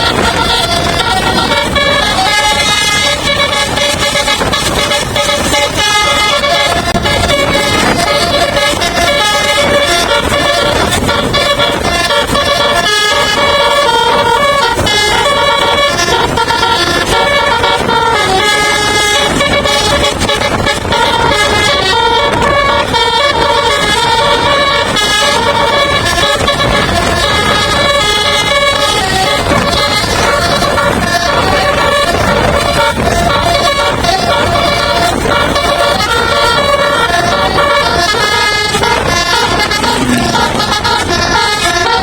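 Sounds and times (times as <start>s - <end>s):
musical air horn playing a tune: 0.0s - 42.0s.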